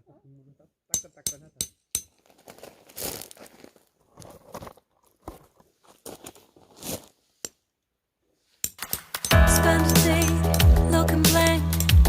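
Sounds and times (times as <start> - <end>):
crinkling and crunching rustles: 2.2 - 7.2.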